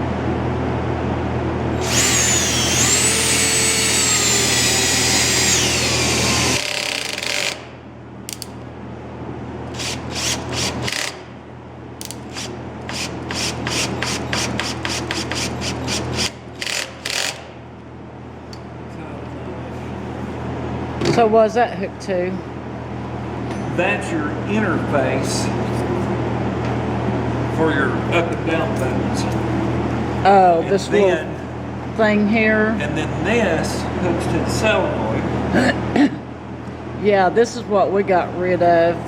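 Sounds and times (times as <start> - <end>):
power tool whine: 1.7 - 7.7.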